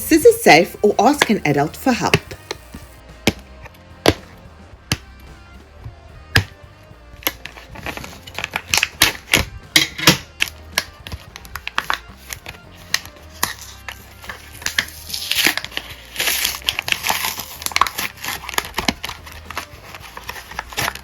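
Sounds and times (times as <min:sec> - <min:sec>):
scissors snipping plastic ties: 0:07.2 - 0:09.4, 0:10.0 - 0:21.0.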